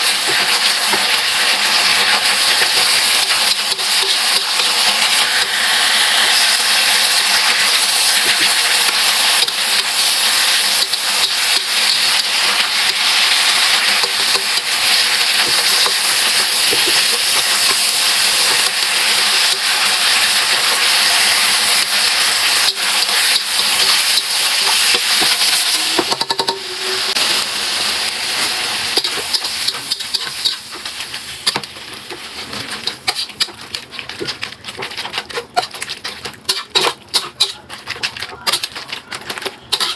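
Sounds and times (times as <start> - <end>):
crackles and pops: 0.0 - 39.9
food sizzling in a pan: 0.0 - 39.9
stirring: 28.9 - 39.9.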